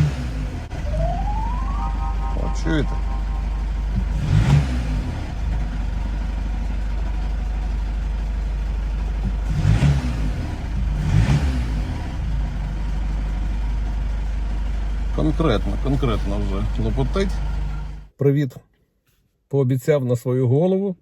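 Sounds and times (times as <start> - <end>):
engine idling with clatter: 3.9 - 18.1.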